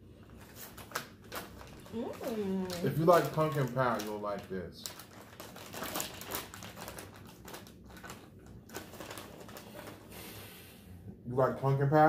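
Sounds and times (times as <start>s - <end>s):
snack bag crackling: 0.4s - 10.1s.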